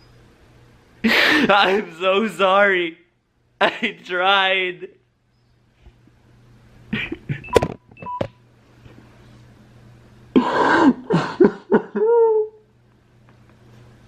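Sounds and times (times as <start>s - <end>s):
man sobbing: 1.0s - 2.2s, 3.6s - 5.0s, 6.9s - 7.5s, 10.3s - 12.6s
brief beeps: 7.4s - 8.4s.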